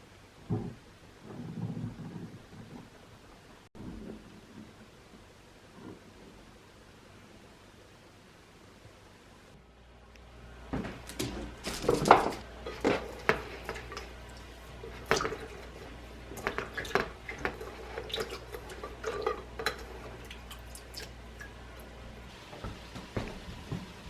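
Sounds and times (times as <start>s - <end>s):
dishes and cutlery clinking: 14.8s - 20.4s.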